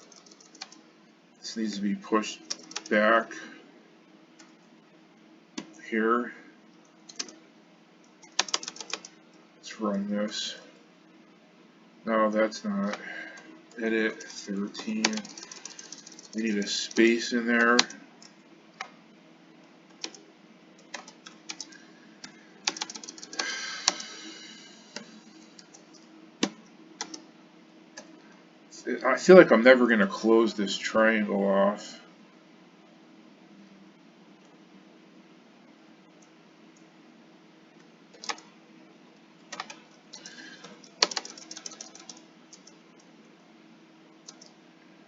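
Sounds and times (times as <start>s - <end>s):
computer keyboard typing: 0.0s - 0.8s, 2.4s - 3.0s, 7.1s - 7.4s, 8.2s - 9.2s, 13.7s - 18.9s, 19.9s - 20.2s, 20.8s - 24.1s, 24.9s - 27.2s, 38.1s - 38.5s, 39.5s - 42.8s, 44.2s - 44.6s.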